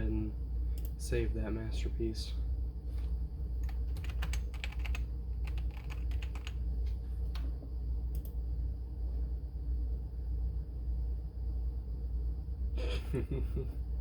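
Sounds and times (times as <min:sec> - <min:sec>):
steady low hum: 0:00.0 - 0:14.0
computer keyboard typing: 0:03.6 - 0:06.6.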